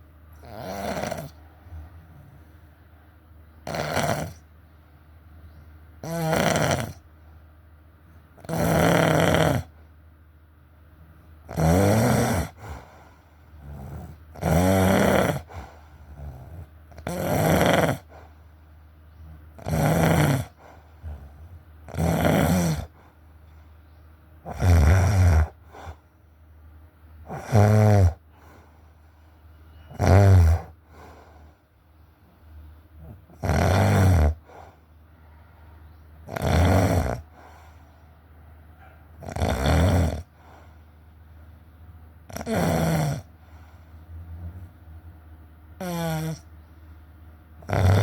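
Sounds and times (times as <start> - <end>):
person snoring: 0.4 - 1.4, 3.6 - 4.4, 6.0 - 7.0, 8.4 - 9.8, 11.5 - 12.8, 13.6 - 18.1, 19.6 - 23.0, 24.5 - 25.6, 27.3 - 28.2, 30.0 - 30.8, 33.0 - 34.5, 36.3 - 37.3, 39.2 - 40.4, 42.3 - 43.3, 45.8 - 46.5, 47.7 - 48.0.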